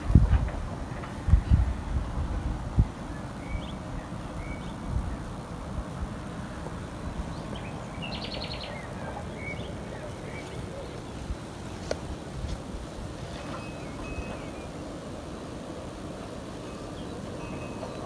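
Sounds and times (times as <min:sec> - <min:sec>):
outdoor background noise: 0:00.0 - 0:18.0
birds chirping: 0:07.4 - 0:11.5.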